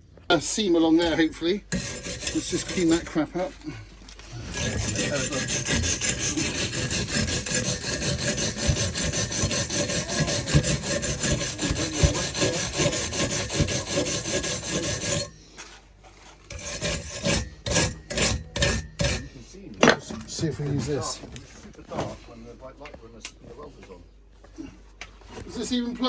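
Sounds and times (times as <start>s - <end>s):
scraping slag off metal pipe: 1.7s - 3.6s, 4.2s - 15.4s, 16.4s - 19.4s.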